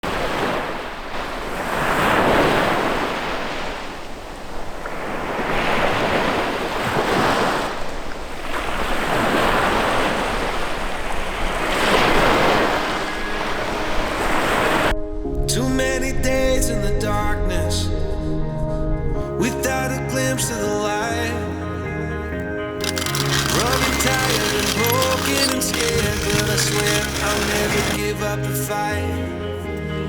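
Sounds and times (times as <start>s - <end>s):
sea waves washing ashore: 0.0s - 14.9s.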